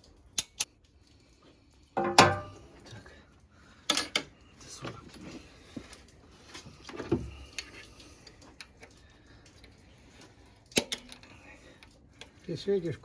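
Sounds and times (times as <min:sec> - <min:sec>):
metallic clicks of hand tools: 0:00.0 - 0:00.7, 0:10.7 - 0:12.3.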